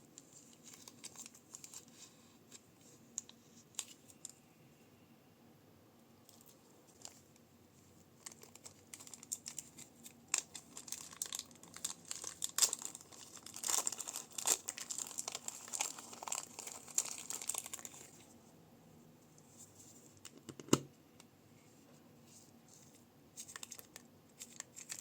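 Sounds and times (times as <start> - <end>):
crunchy slime crinkling in plastic bags: 0.3 - 1.9, 8.2 - 18.2, 23.4 - 25.0.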